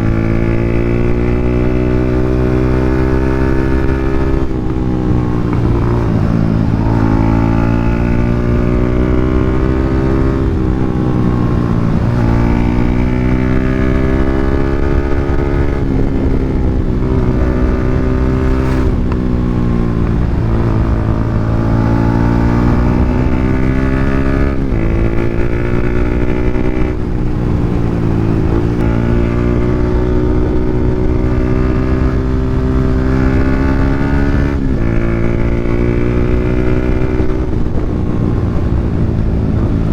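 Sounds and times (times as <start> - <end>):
motorcycle engine revving through gears: 0.0 - 39.9.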